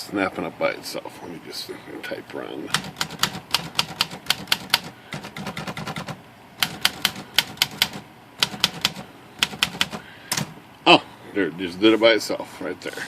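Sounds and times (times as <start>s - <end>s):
typewriter key strikes: 2.7s - 10.5s.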